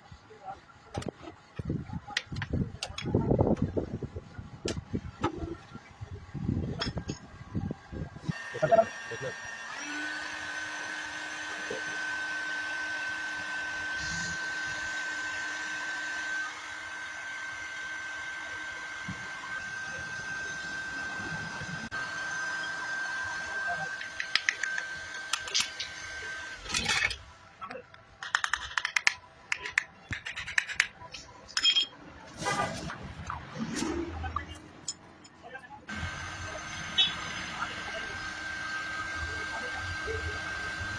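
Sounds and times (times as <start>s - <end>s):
clicks taps and scraping of parts: 0.9s - 3.7s, 24.0s - 25.9s, 26.7s - 32.0s
electric fan motor humming: 7.4s - 26.8s, 35.9s - 40.9s.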